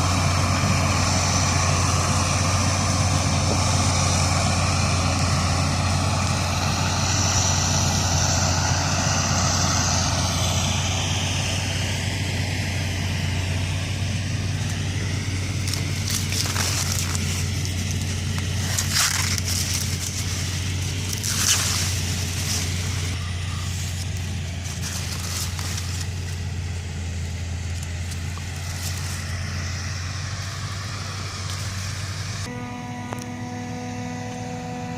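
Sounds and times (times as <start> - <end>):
low engine drone: 0.0 - 34.9
hiss of crop being chopped: 14.7 - 26.4
short crackles: 15.5 - 26.5.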